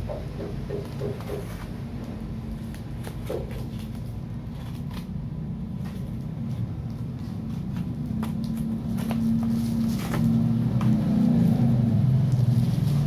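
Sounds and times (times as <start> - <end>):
vehicle engine running: 5.6 - 13.0.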